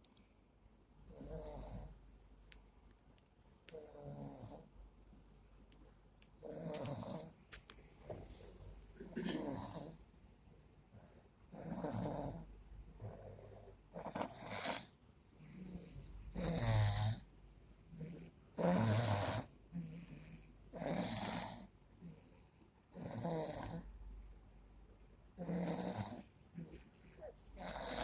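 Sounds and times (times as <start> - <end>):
heavy snoring: 9.1 - 10.0, 11.5 - 17.3, 18.0 - 21.7, 22.9 - 23.9, 25.4 - 26.3, 27.6 - 28.0.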